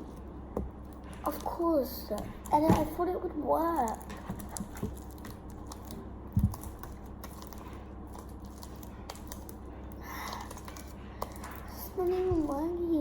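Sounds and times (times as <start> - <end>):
sticky slime clicks and smacks: 3.8 - 9.6.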